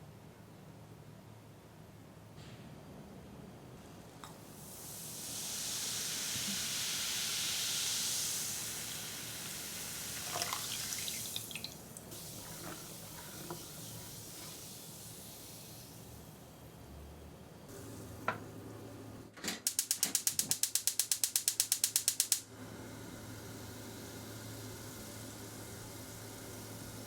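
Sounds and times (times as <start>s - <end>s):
liquid pouring hiss: 4.2s - 16.7s, 22.6s - 27.0s
small drips: 10.1s - 14.6s.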